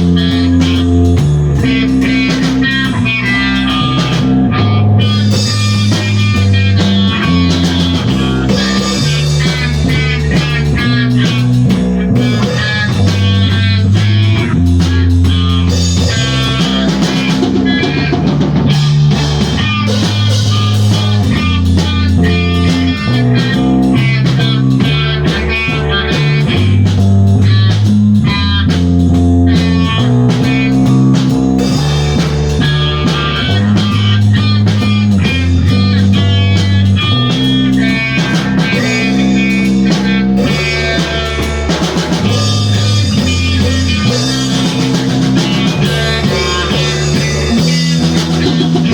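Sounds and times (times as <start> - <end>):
bass guitar: 0.0 - 48.9
drum kit: 0.0 - 48.9
electric guitar: 0.0 - 48.9.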